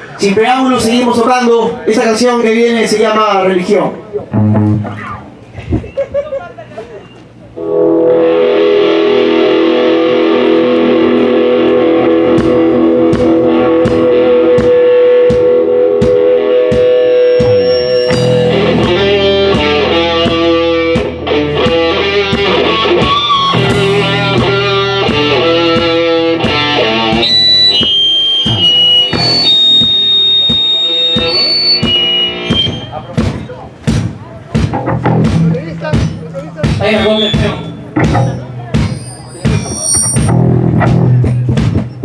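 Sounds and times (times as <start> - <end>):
rock band playing live: 4.1 - 6.0, 7.3 - 42.0
distorted electric guitar: 4.2 - 5.8, 7.5 - 33.5, 34.6 - 42.0
even ticking beat: 12.3 - 42.0.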